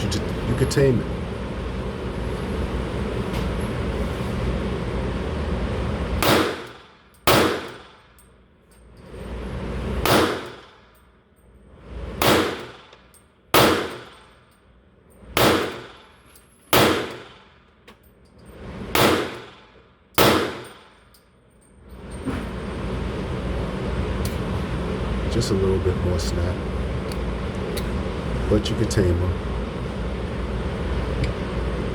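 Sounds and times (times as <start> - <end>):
pistol shots ringing: 6.2 - 8.0, 10.0 - 10.7, 12.2 - 12.9, 13.5 - 14.3, 15.4 - 17.5, 19.0 - 19.6, 20.2 - 21.0.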